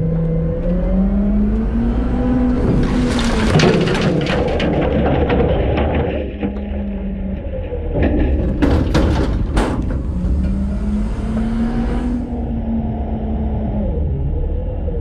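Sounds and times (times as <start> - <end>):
garbage truck engine rumble: 0.0 - 14.9
loud bangs and crashes: 2.1 - 7.2, 7.8 - 12.2.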